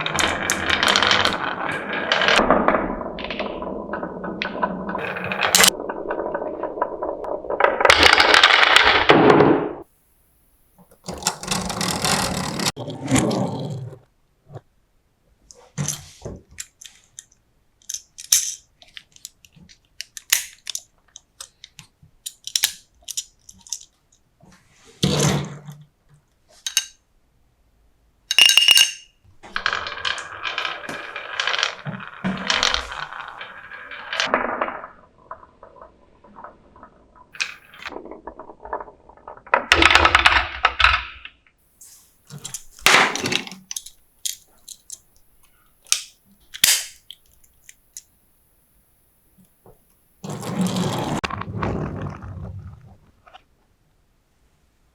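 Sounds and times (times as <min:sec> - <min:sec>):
marbles rolling down a marble run: 0:00.0 - 0:09.1, 0:11.0 - 0:12.8, 0:29.4 - 0:40.7, 0:49.4 - 0:52.8.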